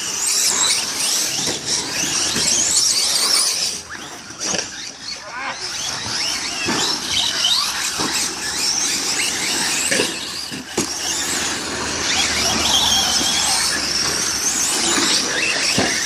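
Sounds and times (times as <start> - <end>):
electric motor whine: 0.0 - 16.0.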